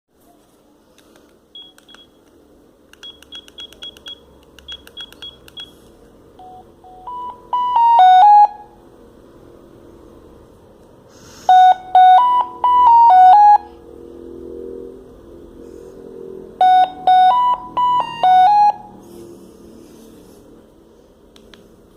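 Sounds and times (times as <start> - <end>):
short high key beeps: 1.6 - 2.2, 3.0 - 5.7
electronic ringtone melody: 6.4 - 8.8, 11.5 - 13.7, 16.6 - 19.0.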